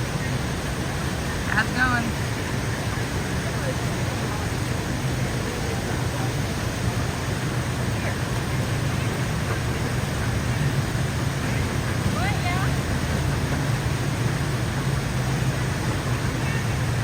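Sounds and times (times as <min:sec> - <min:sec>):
faint voices: 0:00.0 - 0:17.0
waterfall rushing into pool: 0:00.0 - 0:17.0.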